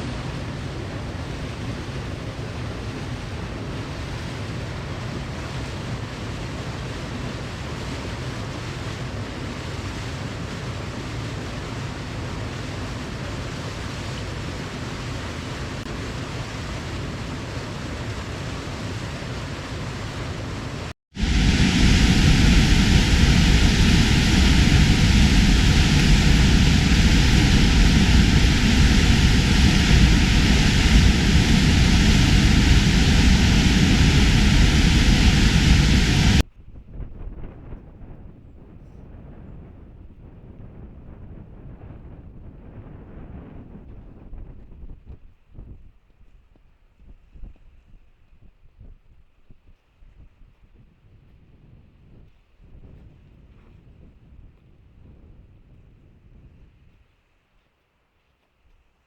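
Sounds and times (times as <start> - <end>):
deep rushing noise: 13.7 - 36.4.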